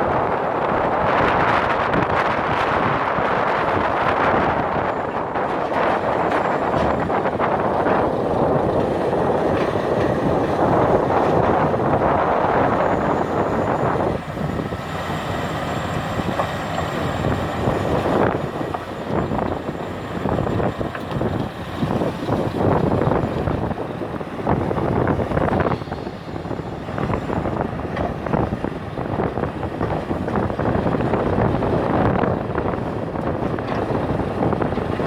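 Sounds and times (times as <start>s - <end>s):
excavator engine and hydraulics: 0.0s - 35.0s
knocks and clatter: 5.1s - 12.0s.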